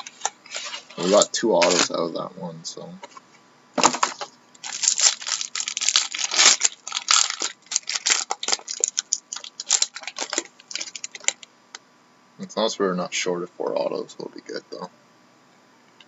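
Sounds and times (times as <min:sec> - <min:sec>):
plastic wrapper tearing and crinkling: 0:00.0 - 0:02.0, 0:03.8 - 0:11.4.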